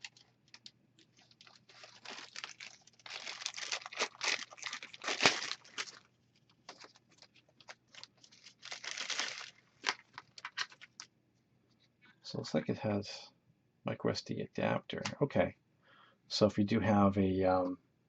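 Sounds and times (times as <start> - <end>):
packaging rustling and crinkling: 0.0 - 11.1.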